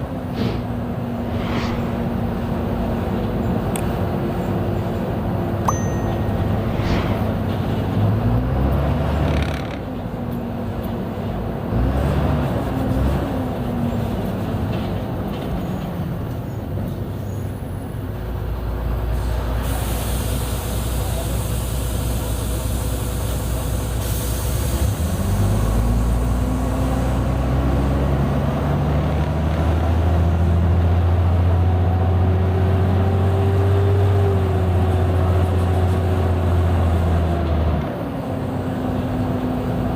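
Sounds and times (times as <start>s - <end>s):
bus diesel engine: 0.0s - 39.9s
compressed air hiss: 19.2s - 22.7s.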